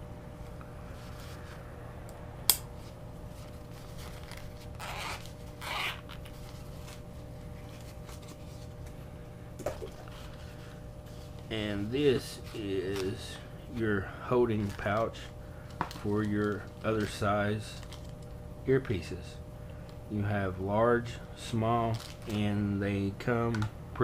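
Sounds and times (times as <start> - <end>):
steady low hum: 0.0 - 24.0
rustling scrapes: 0.8 - 1.6, 2.8 - 8.8.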